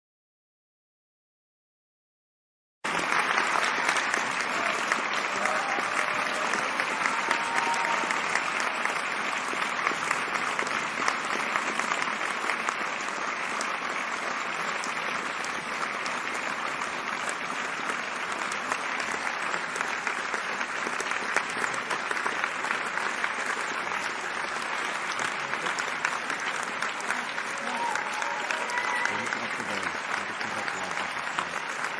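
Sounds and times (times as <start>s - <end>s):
crowd applauding: 2.8s - 31.9s.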